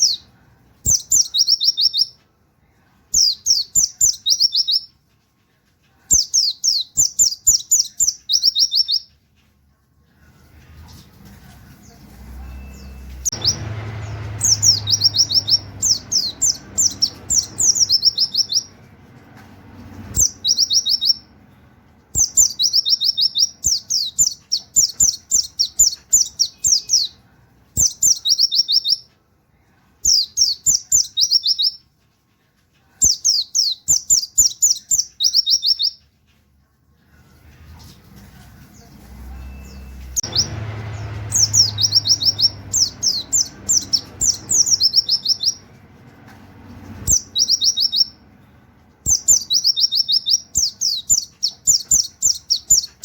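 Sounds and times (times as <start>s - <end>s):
low background rumble: 9.6s - 26.1s, 36.6s - 53.0s
bird singing high notes: 12.4s - 18.8s, 39.3s - 45.7s.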